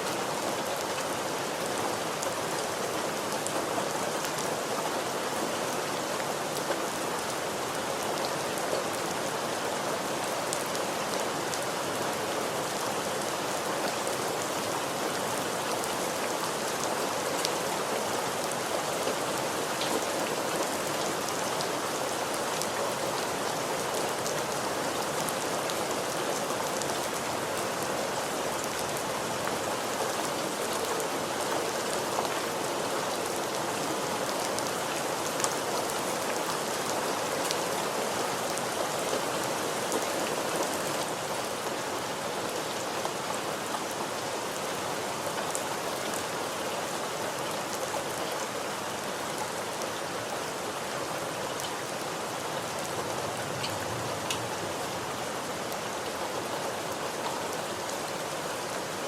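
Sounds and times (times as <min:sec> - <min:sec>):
steady rainfall: 0:00.0 - 0:59.0
raindrops ticking on a surface: 0:52.8 - 0:54.8.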